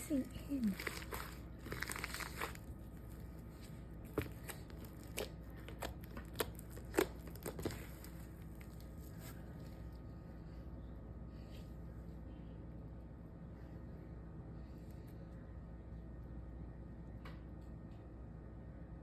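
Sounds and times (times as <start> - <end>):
slime squishing: 0.0 - 10.0.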